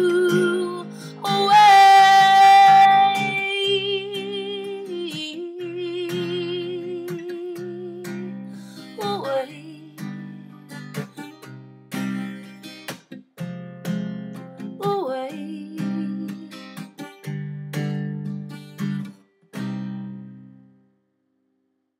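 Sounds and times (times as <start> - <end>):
person singing with vibrato: 0.0 - 10.0
strummed acoustic guitar: 0.0 - 21.1.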